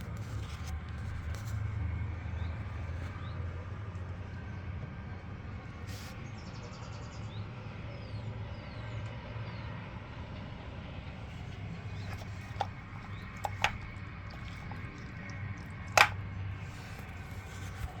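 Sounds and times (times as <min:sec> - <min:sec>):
washing machine humming: 0:11.3 - 0:18.0
sharp clicks or knocks: 0:12.0 - 0:14.9, 0:15.9 - 0:18.0.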